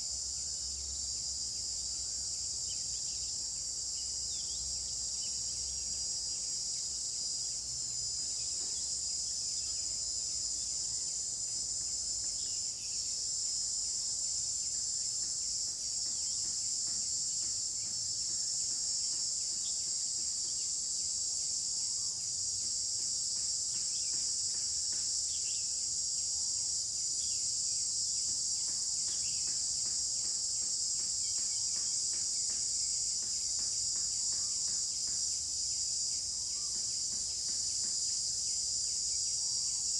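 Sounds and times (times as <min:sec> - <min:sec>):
insects chorus: 0:00.0 - 0:39.9.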